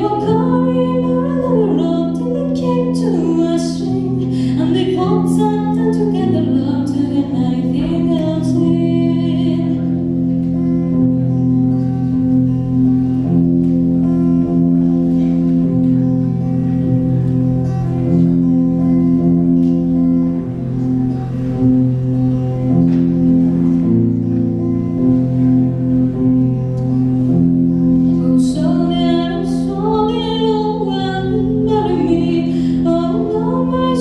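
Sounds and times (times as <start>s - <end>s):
woman singing a ballad: 0.0s - 9.9s, 28.1s - 34.0s
held chord accompaniment: 0.0s - 34.0s.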